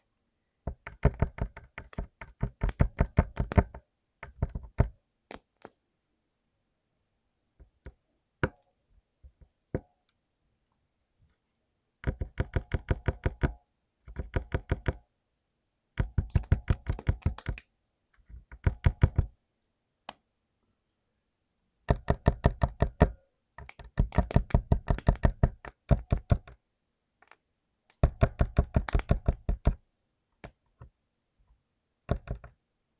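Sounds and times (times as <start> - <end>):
mechanical keyboard typing: 0.9 - 3.8, 12.0 - 13.5, 16.0 - 17.6, 23.7 - 26.6, 28.0 - 29.8.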